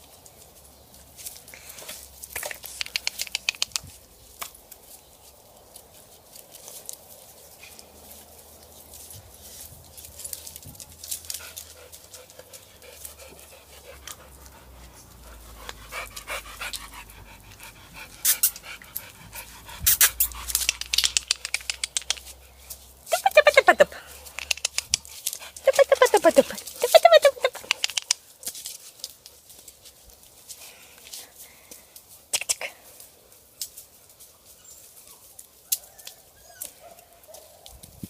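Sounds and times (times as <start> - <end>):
rapid rhythmic panting: 11.4 - 22.0, 24.8 - 28.1.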